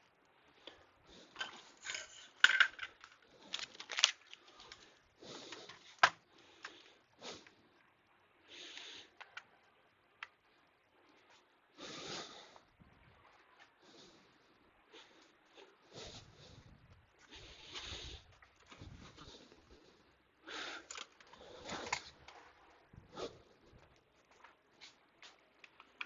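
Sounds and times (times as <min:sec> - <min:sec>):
clicks of computer parts handled: 0:01.4 - 0:04.4
breaths through the nose: 0:11.7 - 0:12.7, 0:13.8 - 0:22.2, 0:22.9 - 0:23.9.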